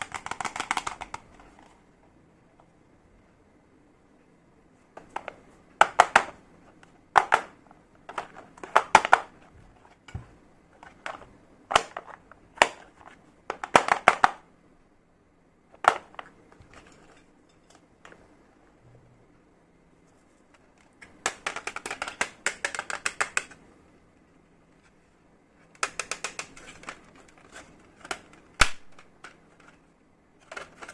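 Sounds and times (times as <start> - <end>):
plastic toy pieces clicking: 0.0 - 1.2, 21.2 - 23.6, 25.8 - 27.0.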